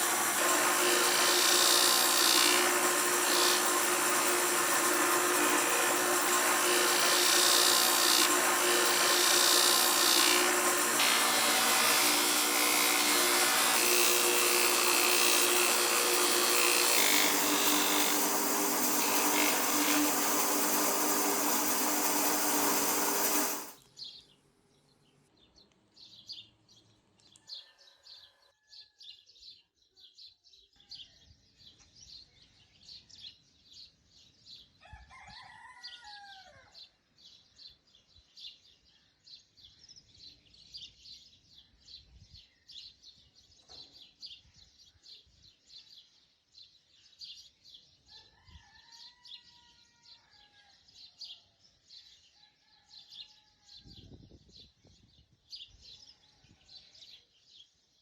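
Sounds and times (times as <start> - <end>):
power tool running: 0.0 - 23.8
rooster crowing: 34.8 - 36.7.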